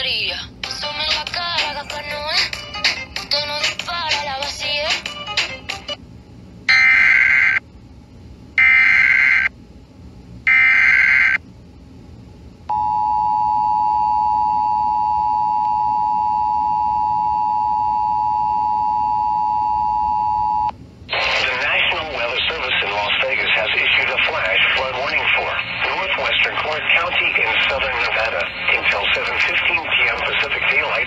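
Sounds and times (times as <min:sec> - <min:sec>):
screeching digital data bursts: 0:06.7 - 0:07.6, 0:08.6 - 0:09.5, 0:10.5 - 0:11.4.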